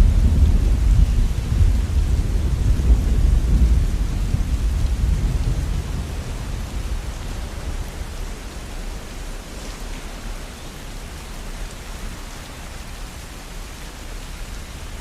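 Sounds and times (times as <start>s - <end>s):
low rumble of thunder: 0.0s - 11.3s
steady rainfall: 0.0s - 15.0s.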